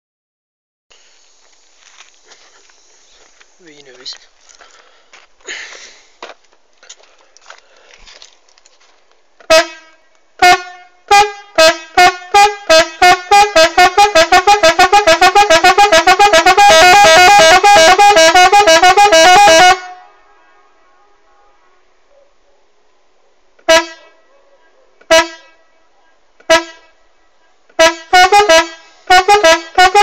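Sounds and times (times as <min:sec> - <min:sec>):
electric car horn honking: 0:09.4 - 0:21.9, 0:23.6 - 0:24.2, 0:25.1 - 0:25.6, 0:26.4 - 0:27.0, 0:27.8 - 0:30.0.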